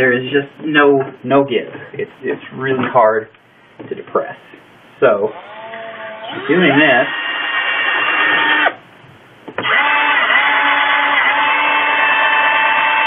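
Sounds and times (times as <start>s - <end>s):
electric drill boring: 5.2s - 13.0s.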